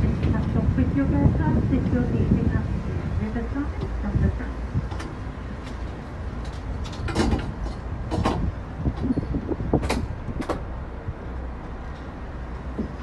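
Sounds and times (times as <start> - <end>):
low vehicle rumble: 0.0 - 13.0
sharp clacks and knocks: 6.4 - 8.5, 9.8 - 10.7.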